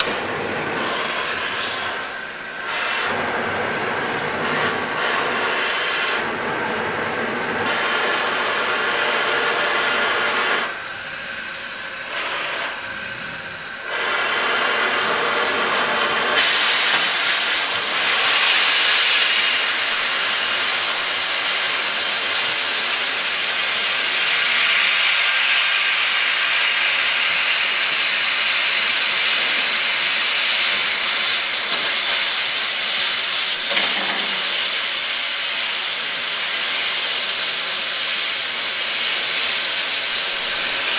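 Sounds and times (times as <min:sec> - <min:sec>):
cutting torch hissing: 0:00.0 - 0:03.2, 0:13.8 - 0:40.9.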